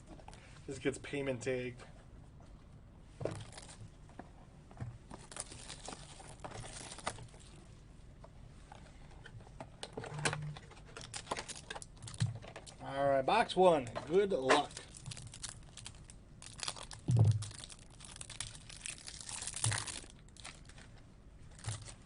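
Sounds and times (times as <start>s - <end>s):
packaging rustling and crinkling: 3.2s - 3.8s, 5.0s - 7.6s, 10.5s - 12.8s, 14.1s - 22.0s.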